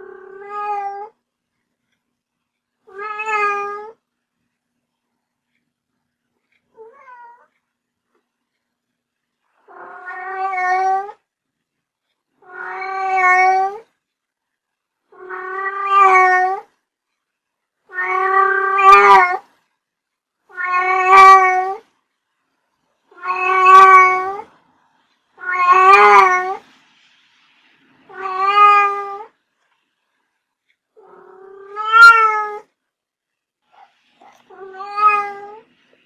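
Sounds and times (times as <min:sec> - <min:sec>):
cat meowing: 0:00.0 - 0:01.2, 0:02.9 - 0:04.0, 0:06.8 - 0:07.5, 0:09.6 - 0:11.2, 0:12.4 - 0:13.9, 0:15.1 - 0:16.7, 0:17.9 - 0:19.5, 0:20.5 - 0:21.9, 0:23.1 - 0:24.5, 0:25.4 - 0:26.6, 0:28.0 - 0:29.4, 0:31.0 - 0:32.7, 0:34.2 - 0:35.7.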